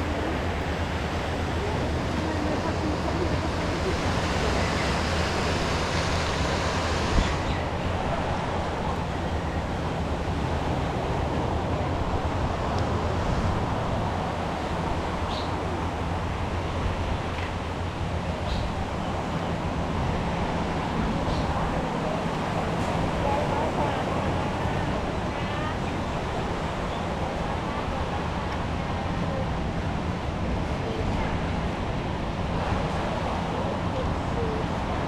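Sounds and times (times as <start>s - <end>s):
outdoor noise wash: 0.0s - 35.0s.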